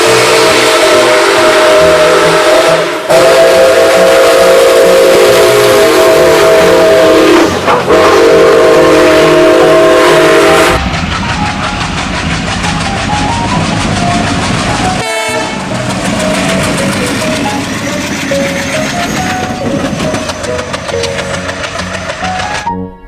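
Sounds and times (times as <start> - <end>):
steam locomotive whistle blasts: 0.0 - 10.8, 15.0 - 15.6
steam hissing: 0.0 - 15.0
rhythmic train rumbling: 0.0 - 22.9.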